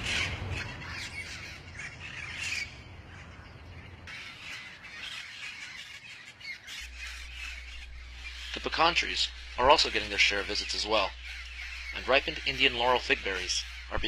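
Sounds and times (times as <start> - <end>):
parrots squawking: 0.0 - 14.0
low rumble: 6.9 - 14.0.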